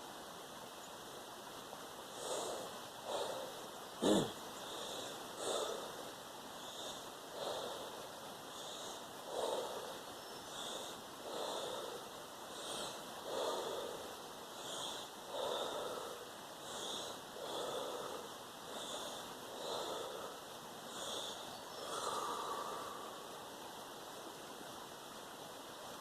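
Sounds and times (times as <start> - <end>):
person breathing rapidly: 2.0 - 23.6.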